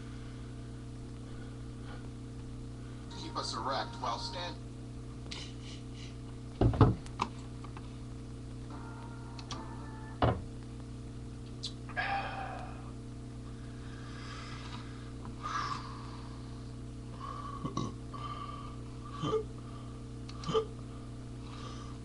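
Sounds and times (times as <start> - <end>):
steady hum: 0.0 - 22.0
man burping: 11.9 - 12.9, 17.6 - 18.0, 19.1 - 19.5, 20.4 - 20.8.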